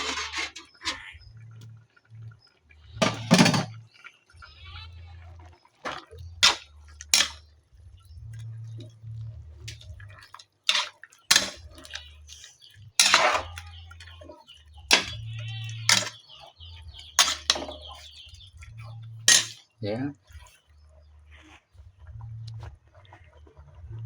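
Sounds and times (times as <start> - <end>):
metal utensils clanking on pot: 0.0 - 1.1, 3.0 - 3.8, 5.9 - 7.5, 9.6 - 19.7.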